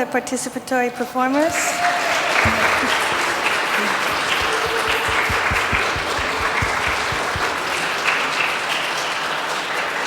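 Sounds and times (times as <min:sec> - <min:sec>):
audience applauding: 0:01.5 - 0:10.0
low thuds: 0:02.4 - 0:07.9.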